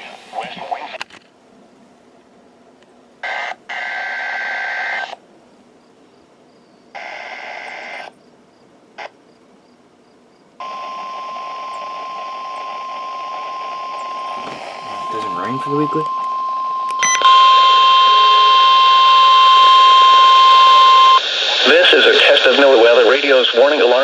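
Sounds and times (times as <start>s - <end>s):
steady warning alarm tone: 10.6s - 21.2s.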